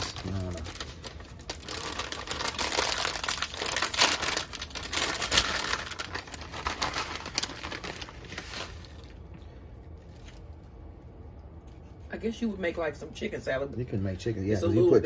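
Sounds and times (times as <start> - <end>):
crinkling and rustling: 0.0 - 10.7.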